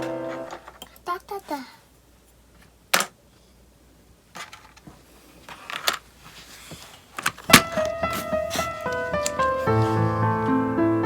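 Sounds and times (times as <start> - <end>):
melody of sustained notes: 0.0 - 0.6, 7.8 - 11.0
plastic toys clicking and knocking: 2.9 - 3.2, 4.3 - 6.0, 7.2 - 8.1.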